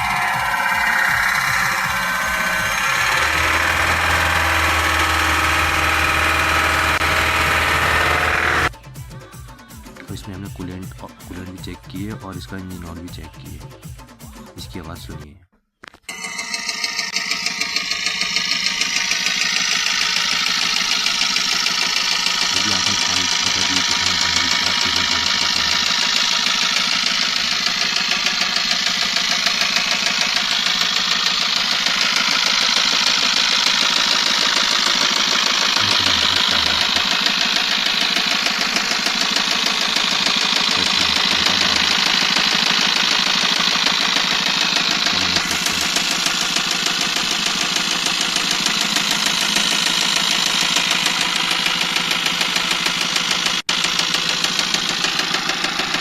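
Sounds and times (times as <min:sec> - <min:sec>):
diesel engine idling with knocking: 0:00.0 - 0:08.7, 0:17.2 - 0:56.0.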